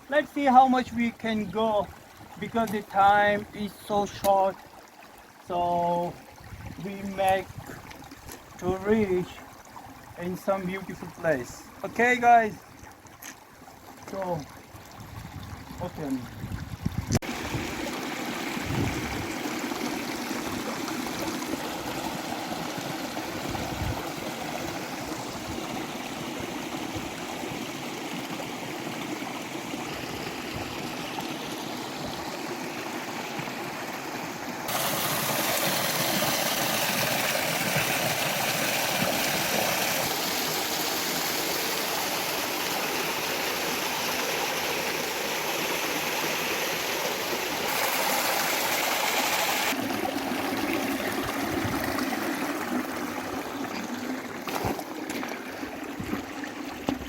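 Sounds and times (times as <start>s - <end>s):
stream rushing over rocks: 17.2s - 57.0s.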